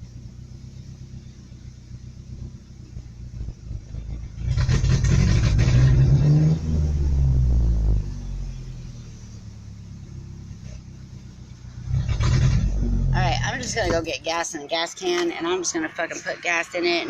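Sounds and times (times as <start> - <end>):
truck engine revving: 2.2 - 14.4.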